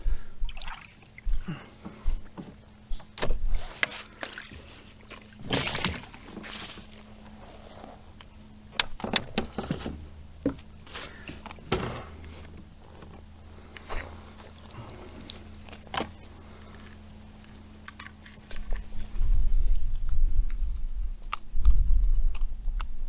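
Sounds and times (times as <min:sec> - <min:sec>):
rustling: 0:03.3 - 0:08.2.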